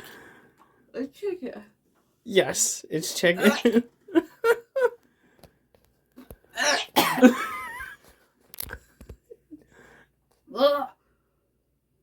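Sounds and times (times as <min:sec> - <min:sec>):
person clearing throat: 0:03.4 - 0:03.8, 0:06.6 - 0:07.4
person coughing: 0:03.4 - 0:03.8, 0:06.6 - 0:07.5.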